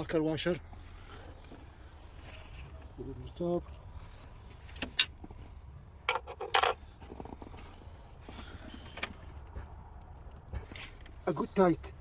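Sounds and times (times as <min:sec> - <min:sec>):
metal clinks and scrapes: 0:06.1 - 0:07.3.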